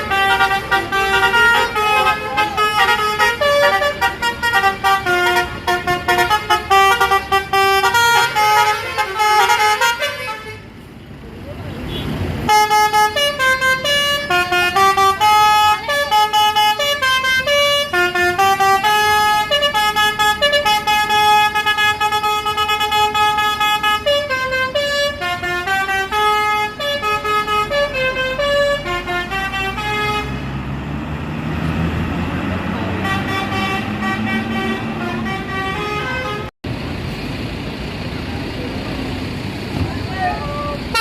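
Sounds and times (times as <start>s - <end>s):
air horns playing a melody: 0.0s - 10.7s, 12.5s - 30.5s, 32.8s - 36.5s.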